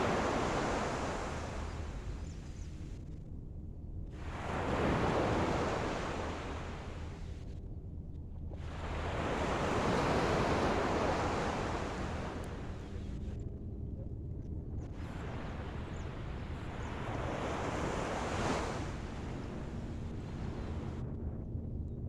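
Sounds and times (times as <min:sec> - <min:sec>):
ocean waves washing on shore: 0:00.0 - 0:02.2, 0:04.2 - 0:07.4, 0:08.6 - 0:13.2, 0:15.0 - 0:20.9.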